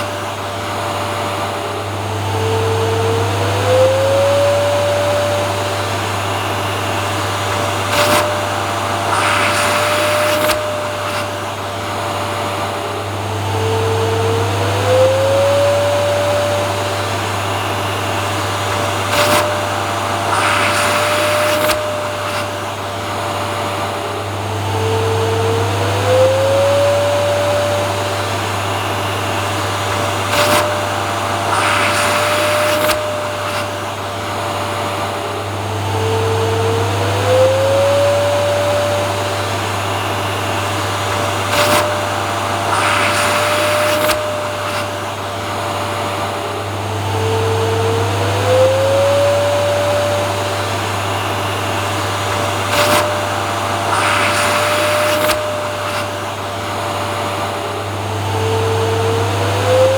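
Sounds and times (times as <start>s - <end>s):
vacuum cleaner motor whine: 0.0s - 59.9s
rushes of air noise: 4.8s - 13.4s, 16.0s - 24.6s, 27.4s - 35.9s, 37.9s - 47.6s, 49.1s - 58.8s.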